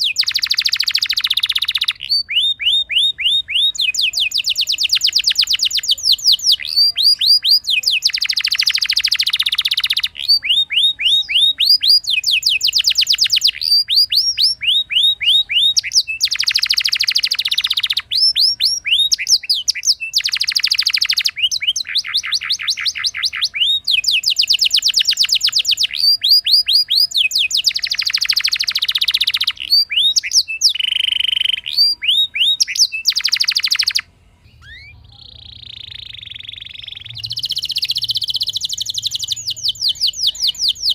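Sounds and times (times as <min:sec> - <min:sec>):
canary singing trills: 0:00.0 - 0:40.9.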